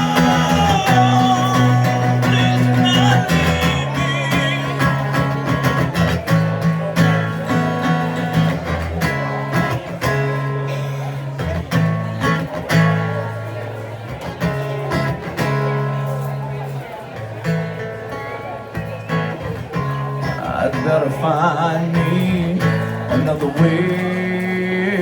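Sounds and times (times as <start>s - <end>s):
sustained bass line: 0.0s - 5.7s
acoustic guitar playing: 0.0s - 25.0s.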